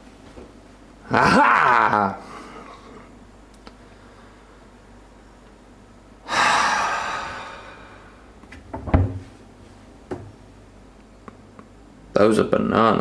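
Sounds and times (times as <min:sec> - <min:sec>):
loud breathy gasp: 0:06.3 - 0:08.2.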